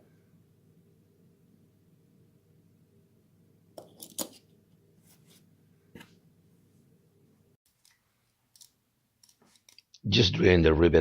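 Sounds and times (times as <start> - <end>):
sharp small clicks and taps: 7.7 - 10.0.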